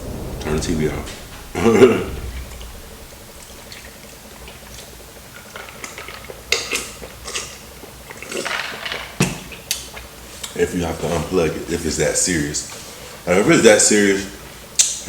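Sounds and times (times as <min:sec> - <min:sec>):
heavy knock: 0:00.0 - 0:04.3.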